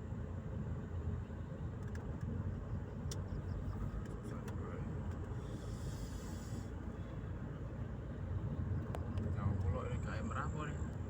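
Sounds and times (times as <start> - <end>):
car engine and road noise: 0.0 - 11.0.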